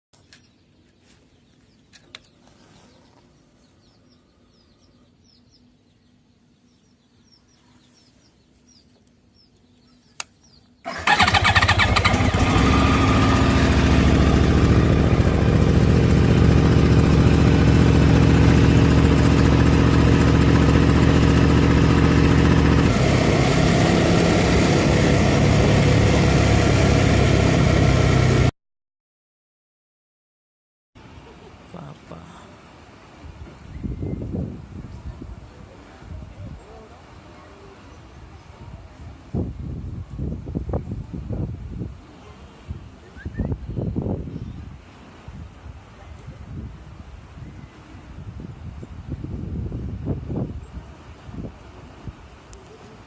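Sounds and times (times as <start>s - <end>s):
motorcycle engine idling: 10.9s - 23.1s.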